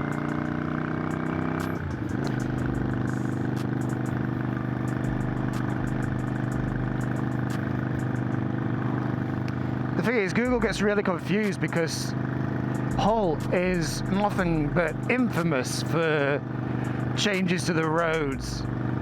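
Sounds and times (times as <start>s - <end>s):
motorcycle engine running: 0.0s - 19.0s.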